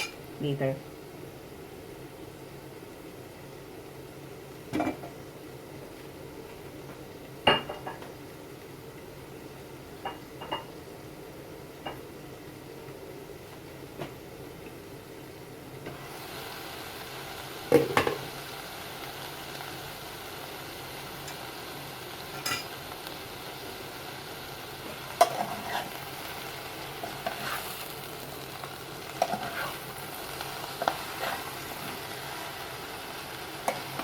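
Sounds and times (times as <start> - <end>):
sizzling hiss: 0.0 - 0.8, 14.7 - 34.0
utensil scraping a pan: 25.2 - 26.0, 27.0 - 27.8, 29.2 - 29.8, 30.8 - 31.6.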